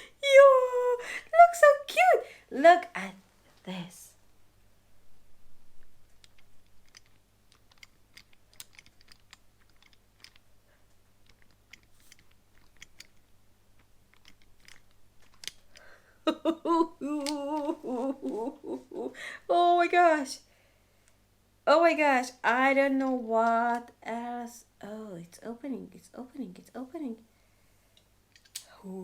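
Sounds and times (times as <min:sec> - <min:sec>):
wavering vocal exclamation: 0:00.0 - 0:04.1, 0:16.3 - 0:20.2.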